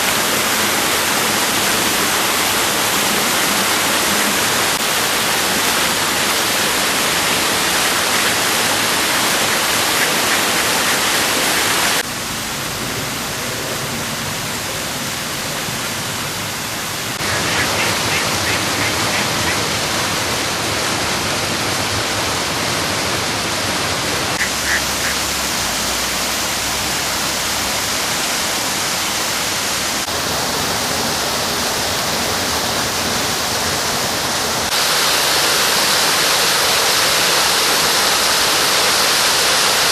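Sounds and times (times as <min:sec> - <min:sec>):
running water: 0:00.0 - 0:39.9.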